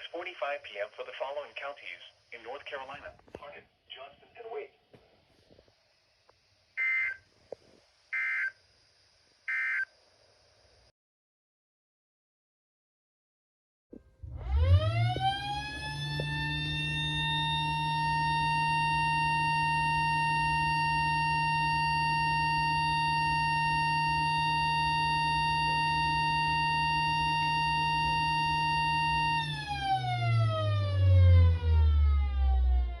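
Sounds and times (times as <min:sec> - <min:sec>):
siren wailing: 0:14.2 - 0:33.0.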